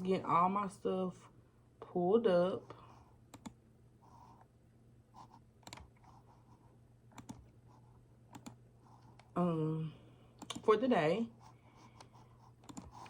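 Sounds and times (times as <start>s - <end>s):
faint low hum: 0.0s - 13.0s
computer keys clicking: 3.3s - 3.6s, 5.6s - 6.0s, 7.1s - 7.5s, 8.3s - 9.3s, 10.4s - 10.7s, 12.0s - 13.0s.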